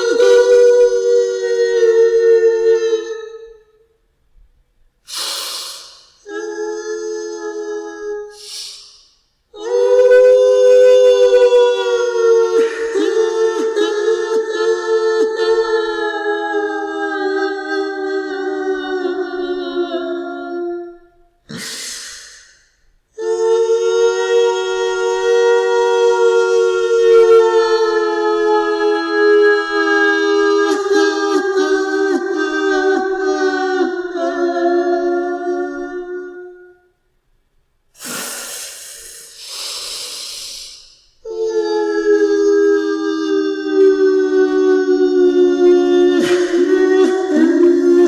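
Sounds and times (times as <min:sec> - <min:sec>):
woman wailing and sobbing: 0:00.0 - 0:03.7, 0:06.2 - 0:08.7, 0:09.5 - 0:22.2, 0:23.2 - 0:36.8, 0:41.2 - 0:48.0
breathy rasping gasps: 0:05.1 - 0:06.6, 0:08.3 - 0:09.1, 0:38.0 - 0:41.4.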